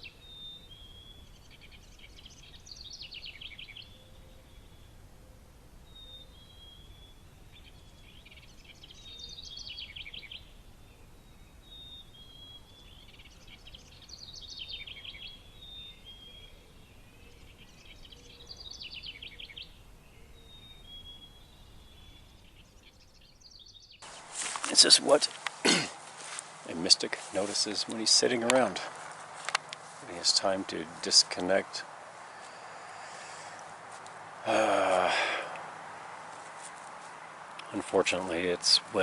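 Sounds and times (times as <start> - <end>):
songbird singing: 0.0 - 39.0.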